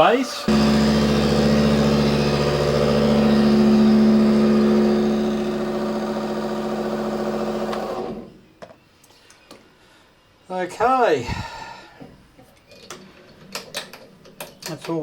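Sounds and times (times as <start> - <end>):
milling machine cutting metal: 0.0 - 8.3.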